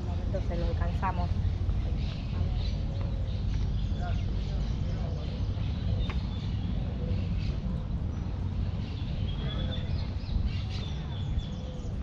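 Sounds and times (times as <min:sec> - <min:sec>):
birds chirping: 0:00.0 - 0:12.0
steady low rumble: 0:00.0 - 0:12.0.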